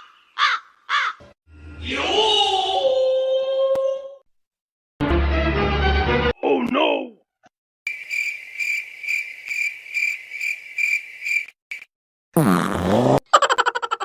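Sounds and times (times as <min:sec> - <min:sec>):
cricket chirping: 0:07.9 - 0:11.9.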